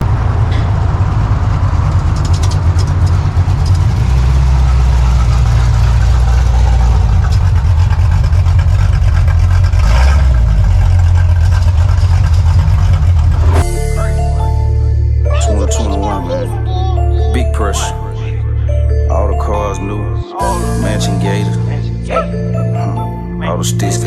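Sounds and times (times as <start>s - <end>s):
car engine running deep: 0.0s - 24.0s.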